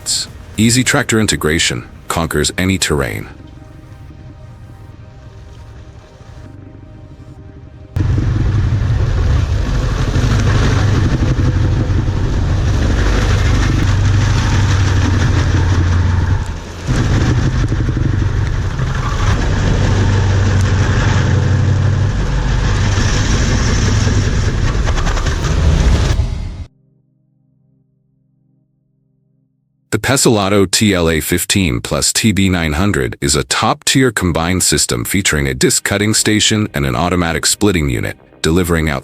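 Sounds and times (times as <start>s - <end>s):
stump grinder engine running: 0.0s - 26.3s.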